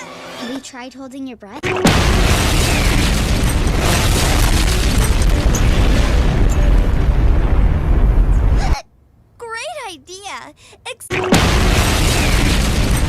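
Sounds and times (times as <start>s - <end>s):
bomb explosion with low rumble: 1.8s - 8.8s, 11.3s - 13.0s.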